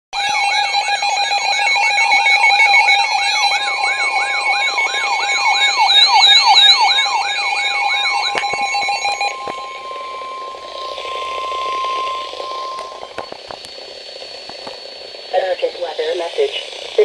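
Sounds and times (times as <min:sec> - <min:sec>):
rising electronic whoop: 0:00.2 - 0:13.3
high beeping tones: 0:00.2 - 0:17.0
steady alarm tone: 0:00.2 - 0:17.0.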